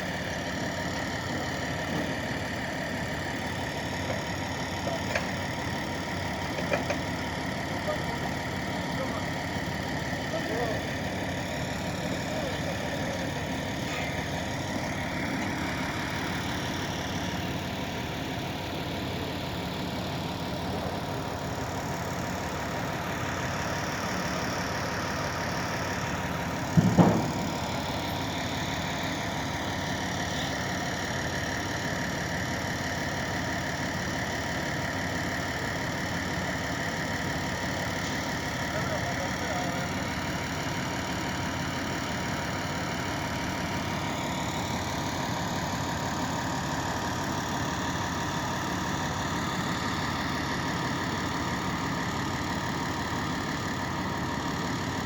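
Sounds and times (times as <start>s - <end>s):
engine idling: 0.0s - 55.0s
sharp knock: 26.8s - 27.4s.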